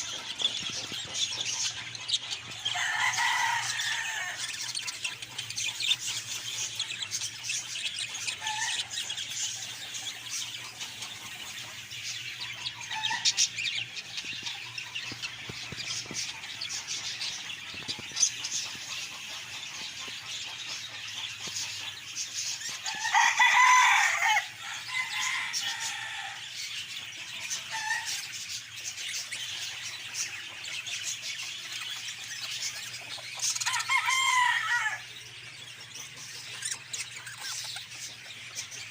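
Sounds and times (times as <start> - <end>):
budgerigars chattering and chirping: 0.0 - 38.9
loud long budgerigar calls: 0.0 - 38.9.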